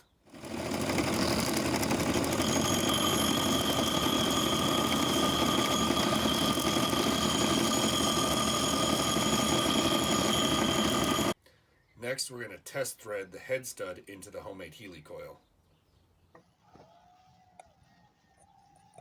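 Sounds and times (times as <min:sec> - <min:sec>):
power grinder whining: 0:00.0 - 0:11.4.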